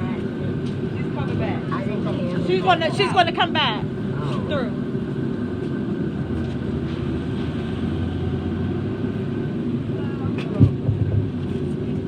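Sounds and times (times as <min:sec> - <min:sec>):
faint voices: 0:00.0 - 0:05.0.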